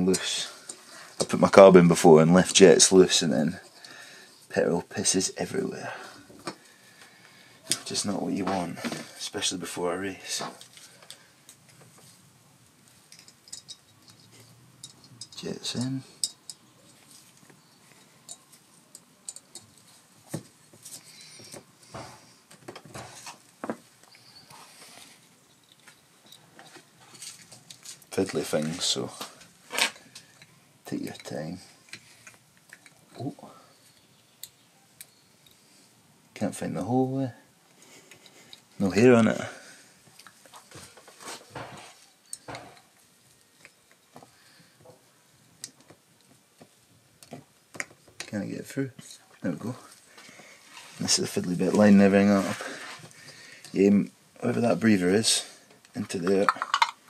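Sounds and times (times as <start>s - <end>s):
small metal parts clicking and scraping: 12.9s - 20.1s, 24.0s - 29.0s, 29.6s - 35.8s, 55.7s - 57.0s
small metal parts clinking: 13.0s - 20.0s, 56.1s - 57.0s.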